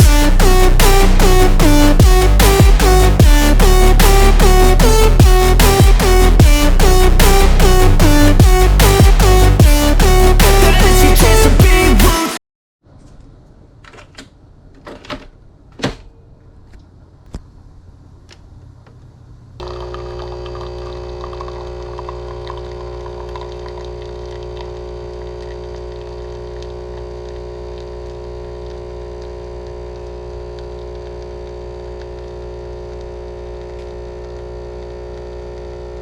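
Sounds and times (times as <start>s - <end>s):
machine hum with low rumble: 13.0s - 36.0s.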